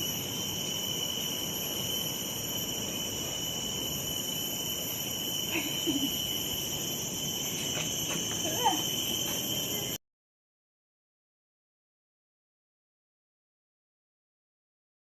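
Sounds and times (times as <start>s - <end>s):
forest insects droning: 0.0s - 10.0s.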